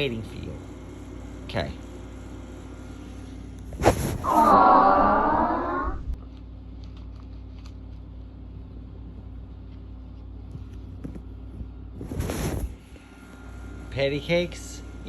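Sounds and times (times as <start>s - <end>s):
steady low hum: 0.0s - 15.0s
voice-like pitched sound: 4.2s - 6.2s.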